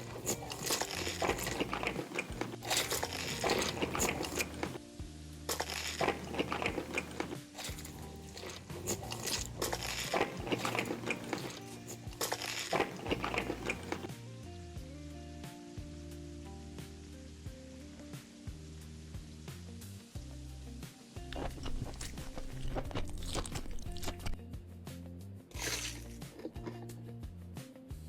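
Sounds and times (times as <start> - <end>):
crunchy chewing of crisp food: 0.0 - 4.8, 5.5 - 14.1, 21.3 - 24.4, 25.5 - 26.9
background music with bass: 0.0 - 28.0.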